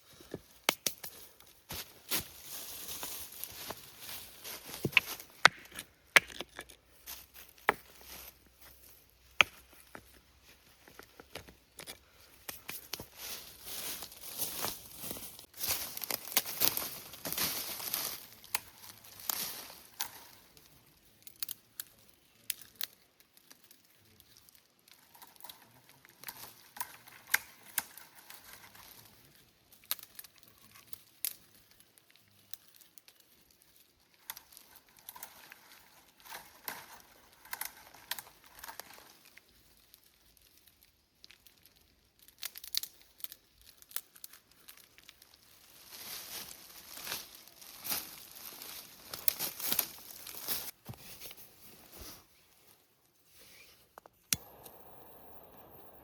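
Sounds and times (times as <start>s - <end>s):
rustling and crinkling: 0.0s - 20.8s, 22.4s - 54.6s
sharp snaps and clicks: 0.6s - 1.2s.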